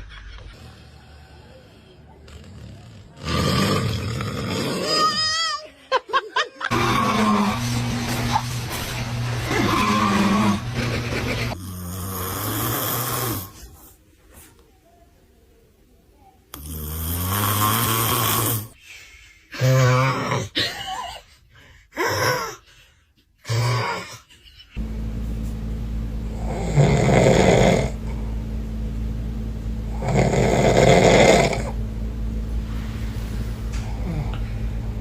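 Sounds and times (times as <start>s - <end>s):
loud snoring: 0.5s - 5.0s, 9.4s - 13.7s, 16.5s - 18.8s, 26.4s - 28.2s, 29.9s - 31.8s
steady low hum: 24.8s - 35.0s.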